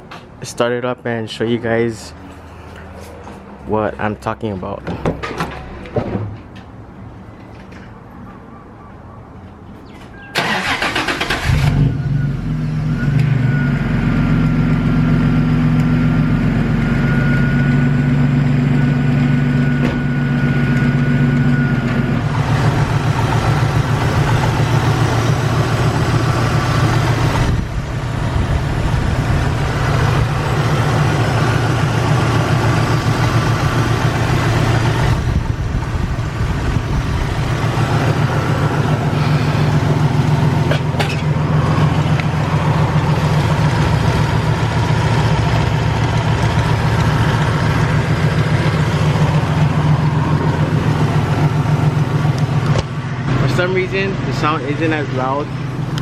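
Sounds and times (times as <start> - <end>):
engine cranking and idling: 10.3 - 12.0, 17.4 - 56.0.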